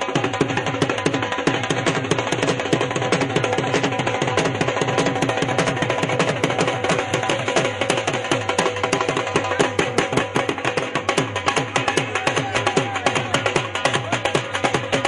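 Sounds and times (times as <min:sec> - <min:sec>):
fast drumming: 0:00.0 - 0:15.0.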